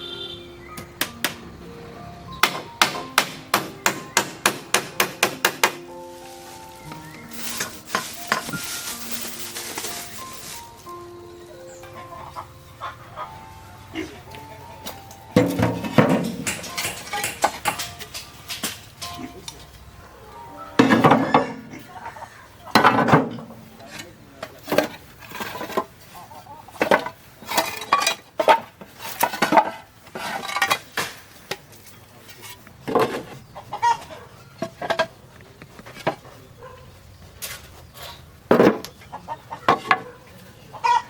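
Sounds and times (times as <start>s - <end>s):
chickens clucking: 11.4s - 18.4s, 19.0s - 24.1s, 25.5s - 28.7s, 33.0s - 41.0s
pots and dishes clattering: 15.4s - 19.5s, 20.8s - 24.1s, 26.7s - 31.2s.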